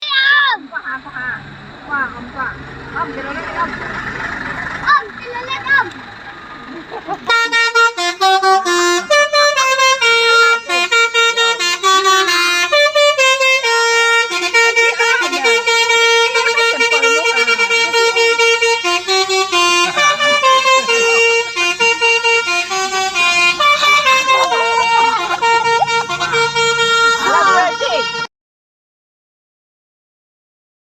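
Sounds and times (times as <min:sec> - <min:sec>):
bus musical air horn: 0:06.8 - 0:28.3.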